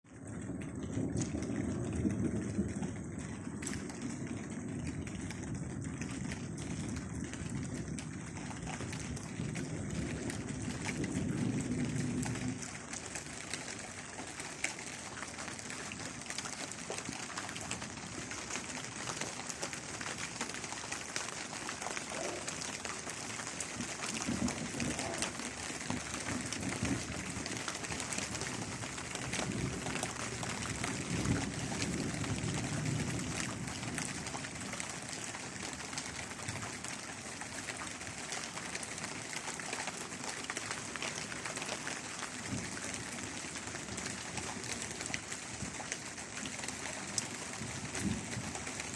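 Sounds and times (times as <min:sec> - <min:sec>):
heavy rain falling: 0:00.1 - 0:48.9.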